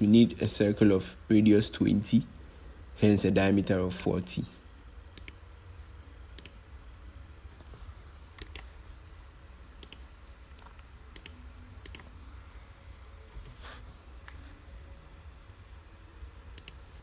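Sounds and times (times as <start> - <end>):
computer mouse and key clicks: 5.1 - 5.4, 6.4 - 6.6, 8.4 - 8.7, 9.8 - 12.2, 16.5 - 16.8
high-pitched whine: 9.5 - 16.1.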